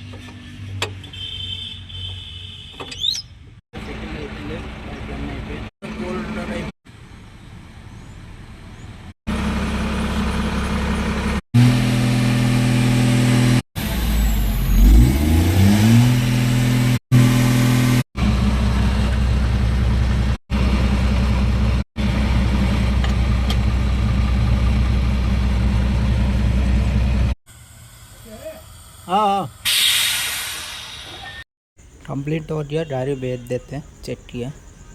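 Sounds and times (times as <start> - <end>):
diesel truck engine idling and revving: 3.8 - 27.4.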